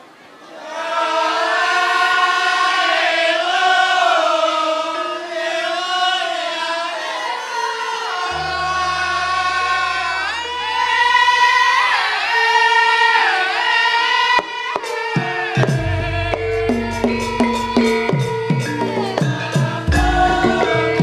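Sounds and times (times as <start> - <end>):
voices singing long sliding notes: 0.0 - 21.0
person singing high notes: 7.6 - 13.8
low held drone tones: 8.3 - 12.4, 19.8 - 21.0.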